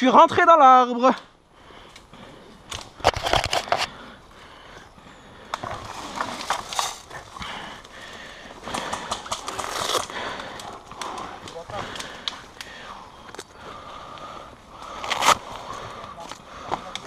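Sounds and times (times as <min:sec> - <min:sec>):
brush and leaves rustling: 0:05.5 - 0:14.2.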